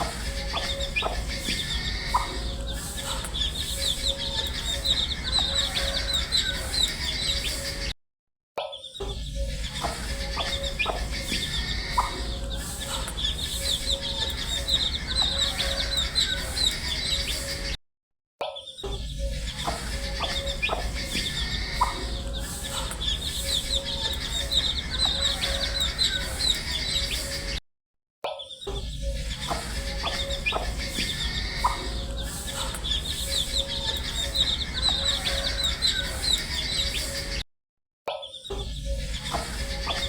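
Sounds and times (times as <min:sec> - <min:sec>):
steady low hum: 0:00.0 - 0:07.5, 0:09.4 - 0:17.4, 0:19.2 - 0:27.0, 0:28.9 - 0:37.0
baby chicks peeping: 0:00.0 - 0:07.9, 0:09.4 - 0:17.7, 0:19.2 - 0:27.6, 0:28.6 - 0:37.4, 0:38.8 - 0:40.0.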